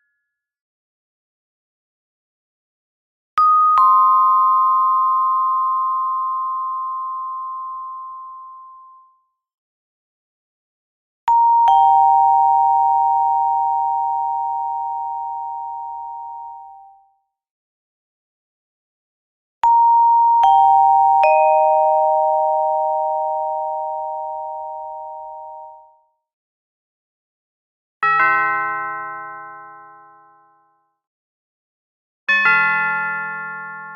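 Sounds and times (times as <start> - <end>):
ding-dong doorbell chime: 3.4 - 9.4, 11.3 - 17.2, 19.6 - 26.0, 28.0 - 31.0, 32.3 - 33.9.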